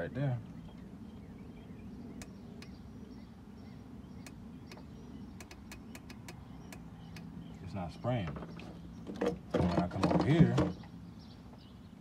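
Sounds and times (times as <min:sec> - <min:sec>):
fuel injector solenoid clicking: 0:04.2 - 0:07.3.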